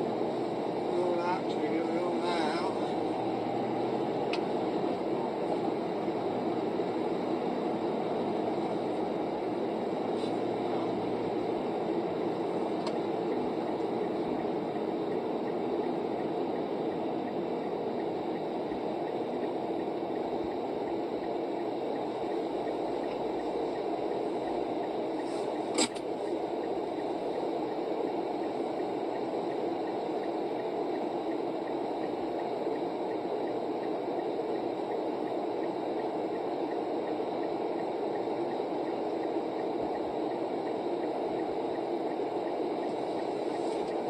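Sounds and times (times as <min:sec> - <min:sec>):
car road and engine noise: 0:00.0 - 0:34.2.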